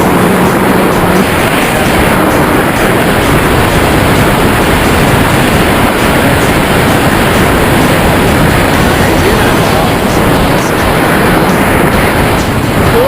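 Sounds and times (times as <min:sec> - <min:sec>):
wind rushing past microphone: 0:00.0 - 0:13.0.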